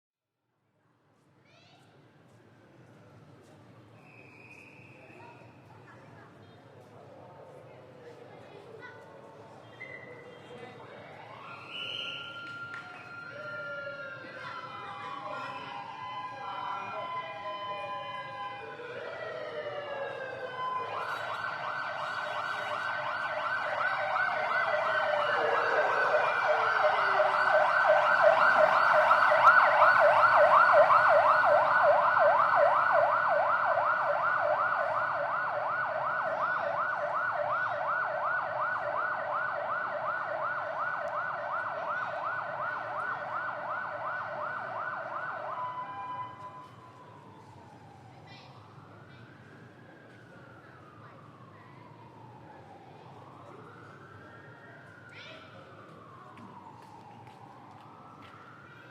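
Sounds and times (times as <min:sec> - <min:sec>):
emergency vehicle siren: 0:09.4 - 0:58.9.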